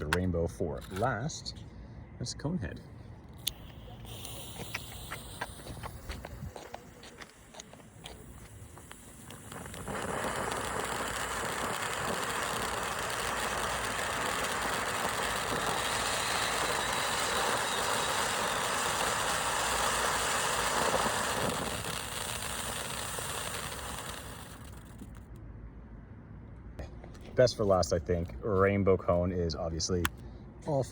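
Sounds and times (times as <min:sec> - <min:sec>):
fountain firework hissing: 0:03.4 - 0:25.3.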